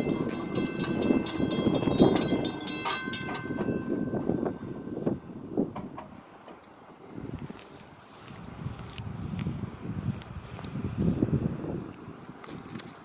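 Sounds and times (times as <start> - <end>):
metallic ringing of wheels on rail: 0.0 - 6.8
train wheels clicking over rail joints: 0.0 - 7.0.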